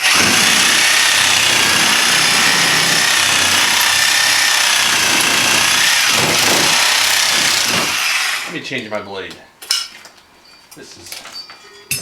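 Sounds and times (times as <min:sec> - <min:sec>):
reciprocating saw cutting steel: 0:00.0 - 0:08.6.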